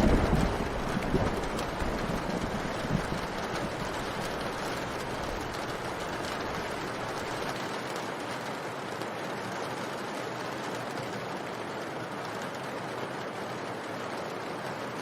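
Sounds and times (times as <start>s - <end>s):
thunder rumble: 0.0s - 7.4s
rain drop ticks: 0.0s - 15.0s
steady rain: 0.0s - 15.0s.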